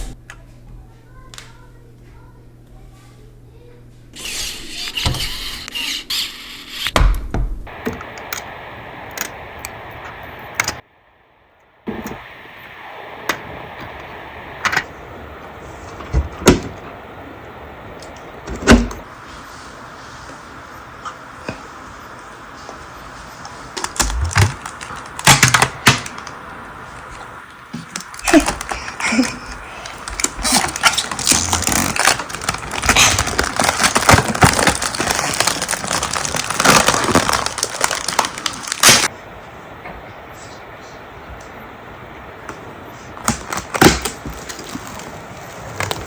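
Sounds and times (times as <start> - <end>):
steady background hiss: 7.7 - 35.7, 38.6 - 46.0.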